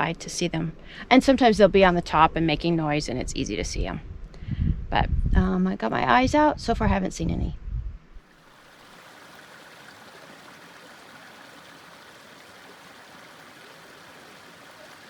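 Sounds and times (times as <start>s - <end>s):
creek water flowing: 8.2s - 15.0s.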